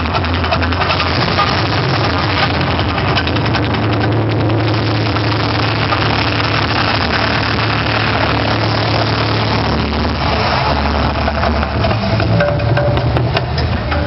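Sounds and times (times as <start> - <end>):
low rumble with dense hiss: 0.0 - 14.0.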